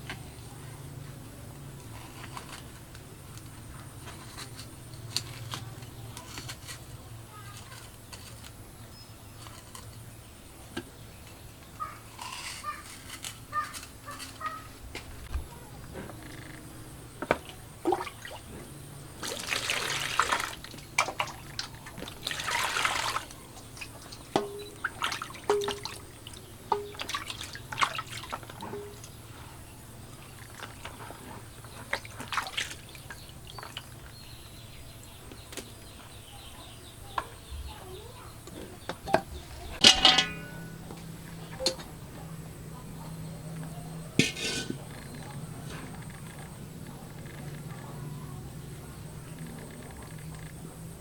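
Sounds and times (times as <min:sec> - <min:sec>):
water pouring and splashing: 0:17.8 - 0:18.5, 0:19.2 - 0:29.0, 0:30.4 - 0:34.0
kitchen utensils clicking and knocking: 0:23.0 - 0:27.7, 0:38.9 - 0:41.0, 0:41.6 - 0:42.0, 0:43.6 - 0:45.4
loud ringing clink: 0:39.8 - 0:40.8.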